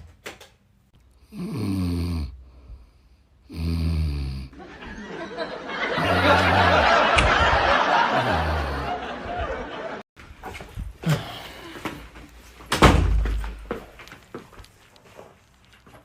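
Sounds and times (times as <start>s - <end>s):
woman snoring: 1.2s - 2.5s, 3.4s - 4.6s.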